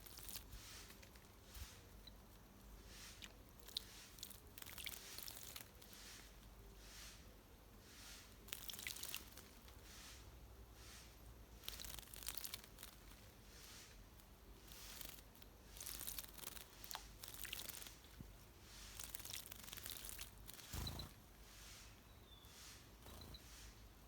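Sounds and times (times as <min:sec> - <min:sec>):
bird splashing in water: 0:02.9 - 0:06.2, 0:14.7 - 0:21.8
bird wing-beats: 0:19.0 - 0:22.0, 0:22.6 - 0:23.8.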